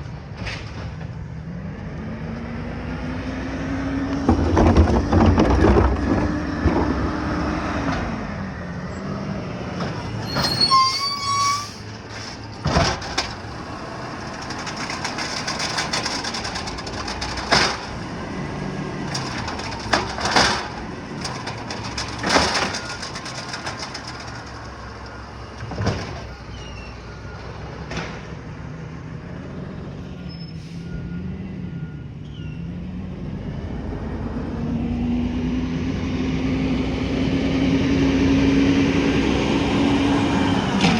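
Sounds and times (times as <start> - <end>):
garbage truck engine: 0.0 - 40.9
high squeal: 10.1 - 12.0.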